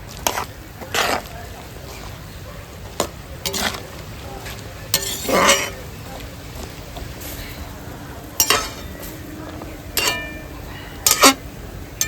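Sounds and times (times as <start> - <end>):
metal utensil scraping a pot: 3.5 - 3.8, 5.0 - 5.9, 8.4 - 9.1, 10.0 - 11.4.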